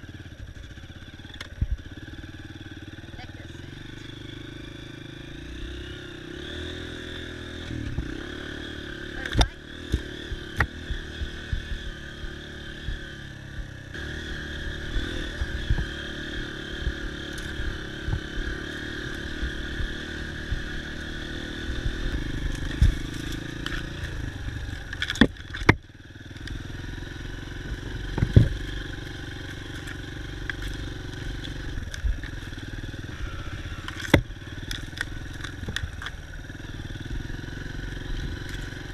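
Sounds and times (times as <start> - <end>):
dirt bike engine running: 0.0 - 38.9
sharp knocks and clatter: 24.9 - 25.8.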